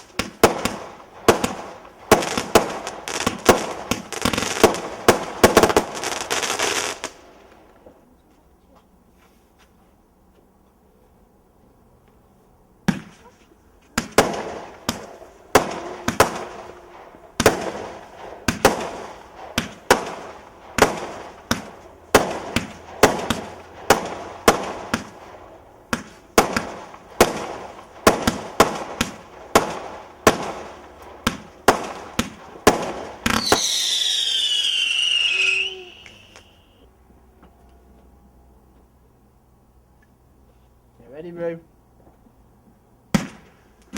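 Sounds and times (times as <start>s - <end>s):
firework bangs: 0.0s - 7.8s, 12.8s - 36.8s, 43.1s - 43.9s
firework whistle sliding down: 33.4s - 36.8s.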